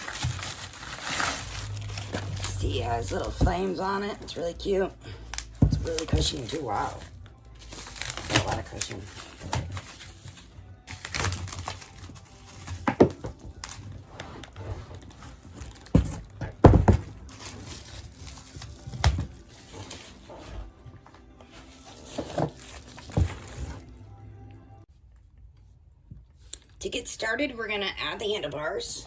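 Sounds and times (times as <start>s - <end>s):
faint background music: 0.0s - 29.0s
knocks and thumps of bike parts: 15.9s - 17.2s.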